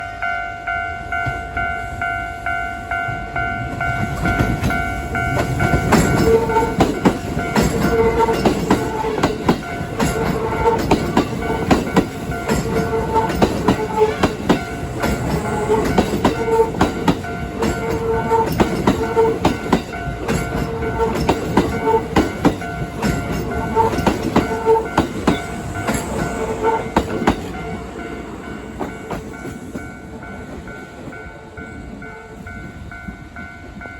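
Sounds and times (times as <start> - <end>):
level crossing warning bell: 0.0 - 33.9
train wheels clattering over rail joints: 3.7 - 30.8.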